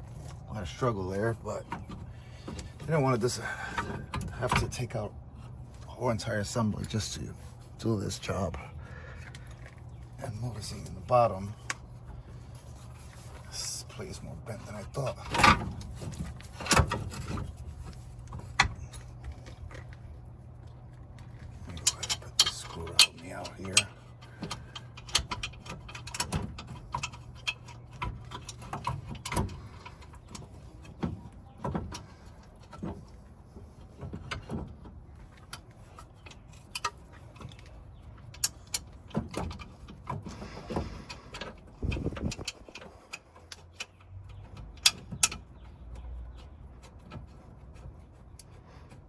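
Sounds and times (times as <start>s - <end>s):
hand tools clicking and tapping: 21.7s - 33.0s.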